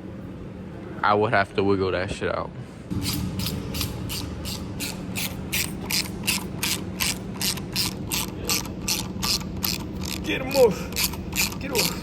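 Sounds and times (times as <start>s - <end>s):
ratchet wrench clicking: 3.0s - 12.0s.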